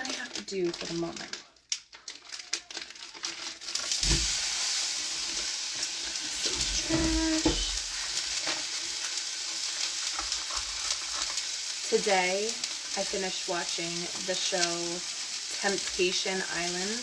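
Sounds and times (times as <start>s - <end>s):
frying sizzle: 0.0s - 17.0s
meat thumping into pan: 3.9s - 4.4s, 6.4s - 8.4s.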